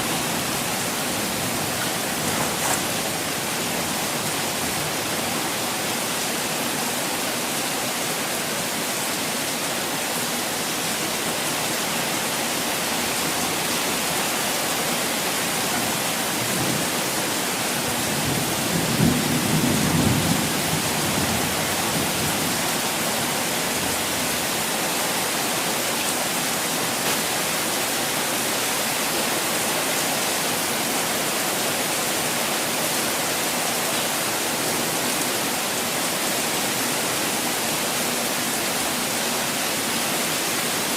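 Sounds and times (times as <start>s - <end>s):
hiss of falling water: 22.2s - 40.9s.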